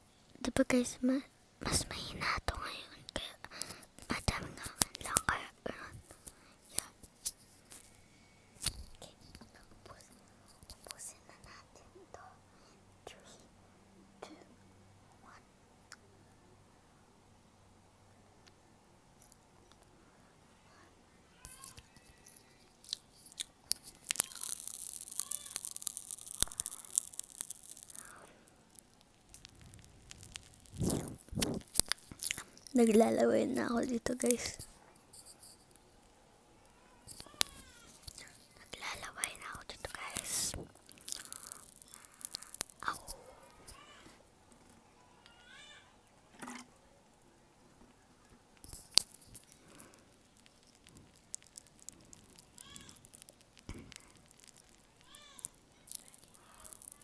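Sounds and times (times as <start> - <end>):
popping candy crackling: 0.2 - 8.0, 8.6 - 12.3, 21.4 - 57.0
cat meowing: 36.8 - 37.9, 43.1 - 44.2, 45.0 - 46.0.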